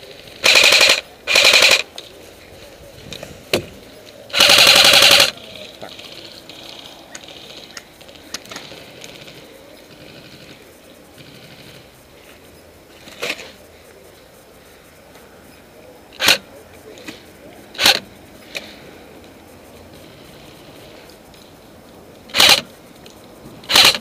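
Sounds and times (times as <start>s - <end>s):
airsoft gun bursts: 0.1s - 2.0s, 4.3s - 12.0s, 16.2s - 16.5s, 17.1s - 18.8s, 22.3s - 22.7s, 23.6s - 24.0s.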